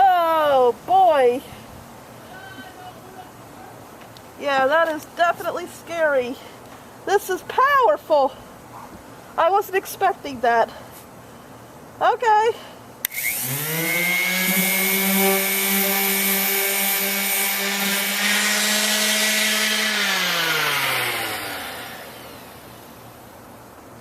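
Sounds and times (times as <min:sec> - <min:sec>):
orbital sander whining: 0:13.1 - 0:23.2.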